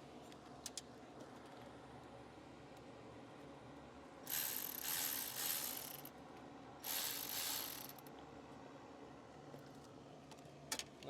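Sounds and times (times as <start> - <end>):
ratchet wrench clicking: 4.3 - 6.1, 6.8 - 8.1.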